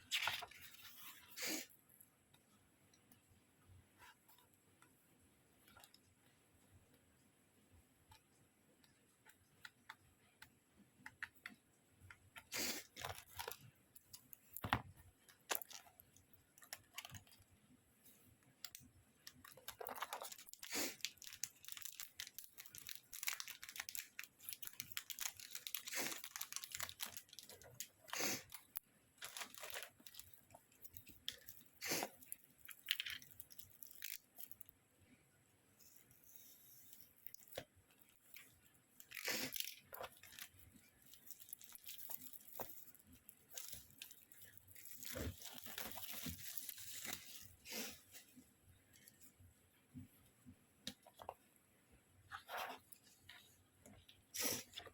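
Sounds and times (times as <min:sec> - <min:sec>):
packaging rustling and tearing: 0:19.3 - 0:34.7, 0:36.9 - 0:48.0.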